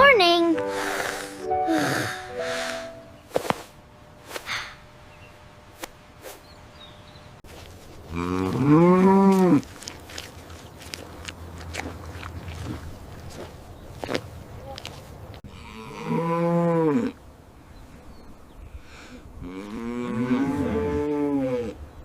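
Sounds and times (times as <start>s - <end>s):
short musical notes: 0.4s - 3.3s
cow mooing: 8.2s - 9.6s, 15.5s - 17.2s, 19.4s - 21.8s.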